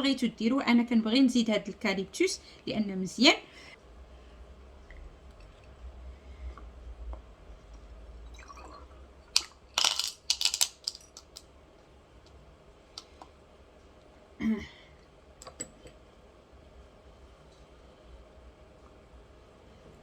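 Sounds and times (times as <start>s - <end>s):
bottles and caps clicking: 9.4s - 11.4s.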